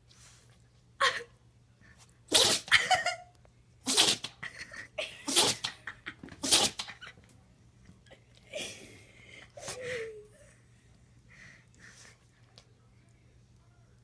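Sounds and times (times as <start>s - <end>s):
person sneezing: 2.3s - 2.8s, 3.9s - 4.4s, 5.2s - 5.8s, 6.4s - 7.0s.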